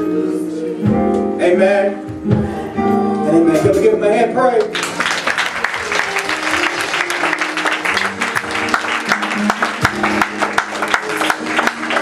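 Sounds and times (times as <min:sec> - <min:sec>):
instrumental music with held notes: 0:00.0 - 0:12.0
congregation clapping: 0:04.6 - 0:12.0.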